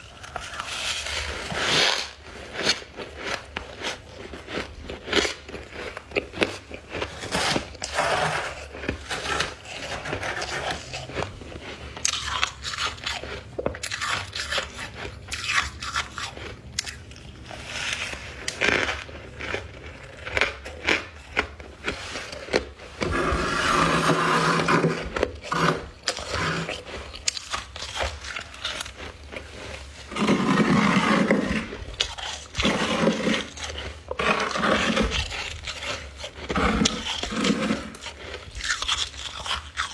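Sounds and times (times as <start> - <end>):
crunching and chewing ice: 0.0 - 39.9.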